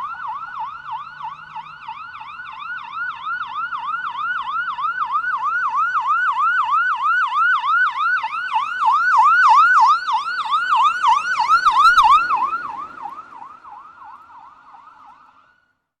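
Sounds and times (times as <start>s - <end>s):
police siren yelping: 0.0s - 15.5s.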